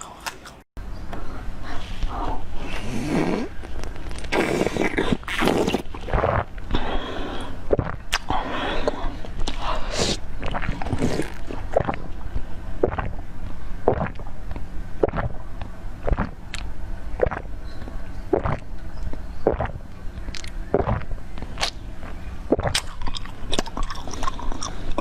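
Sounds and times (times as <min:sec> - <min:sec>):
chewing with wet mouth clicks: 0:13.9 - 0:17.5, 0:18.3 - 0:25.0.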